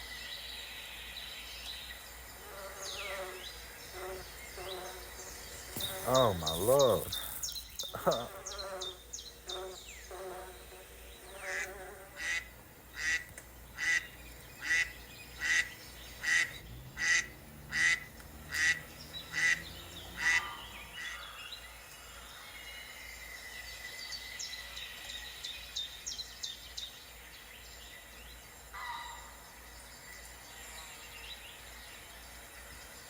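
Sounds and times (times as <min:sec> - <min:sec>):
wild bird calling: 0:04.0 - 0:21.7.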